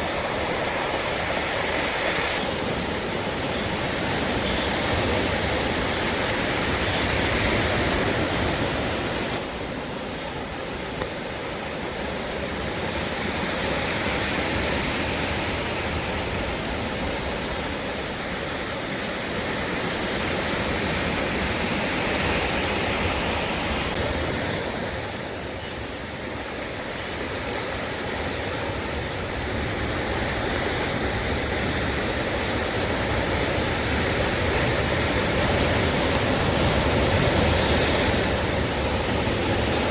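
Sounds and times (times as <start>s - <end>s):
sea waves washing in: 0.0s - 39.9s.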